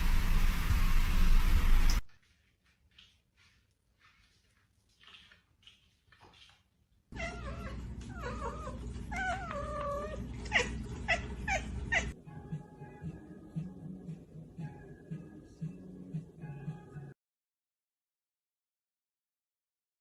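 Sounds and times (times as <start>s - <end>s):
cat meowing: 7.1s - 12.2s.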